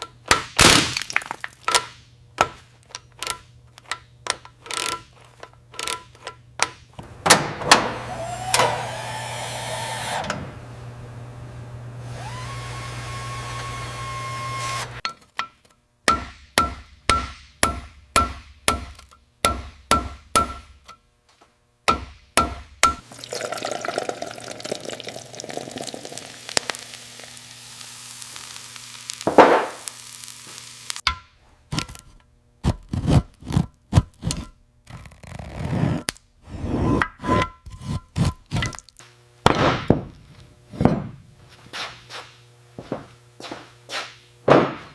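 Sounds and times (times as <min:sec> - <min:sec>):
hiss: 0:26.8 - 0:31.0
heavy thunk: 0:40.8 - 0:41.2, 0:44.5 - 0:44.9.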